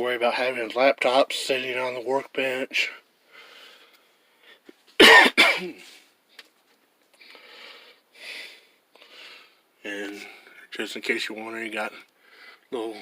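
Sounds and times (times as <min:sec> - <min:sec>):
man breathing: 0:03.2 - 0:04.7, 0:07.2 - 0:10.7, 0:12.0 - 0:12.7
man coughing: 0:05.0 - 0:05.9.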